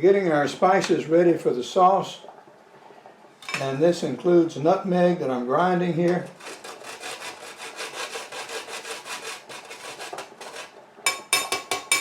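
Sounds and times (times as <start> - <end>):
nutmeg rasping on grater: 6.3 - 10.8.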